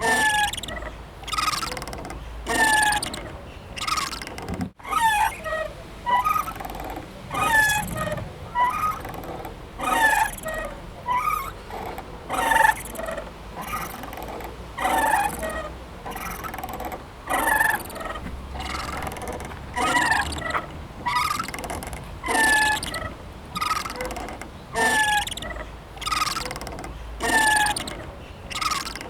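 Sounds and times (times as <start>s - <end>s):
playground swing squeaking: 0.0s - 29.0s.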